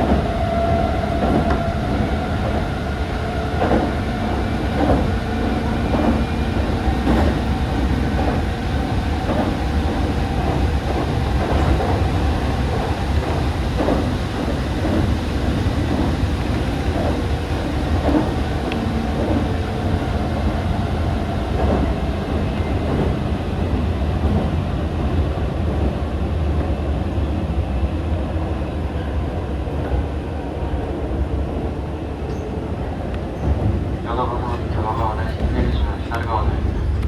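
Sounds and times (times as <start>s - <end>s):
train wheels rumbling on rail: 0.0s - 37.0s.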